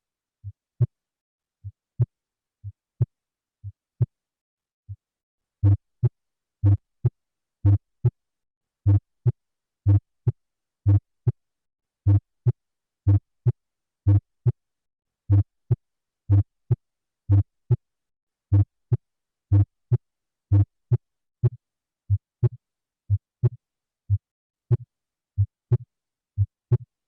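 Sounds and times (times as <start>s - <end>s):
heartbeat lub-dub: 20.5s - 25.8s, 26.4s - 26.9s.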